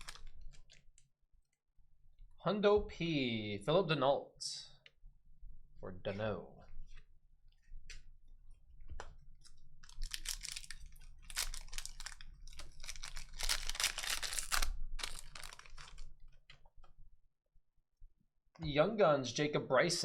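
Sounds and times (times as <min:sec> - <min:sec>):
cards rustling and scraping: 0:09.4 - 0:16.6.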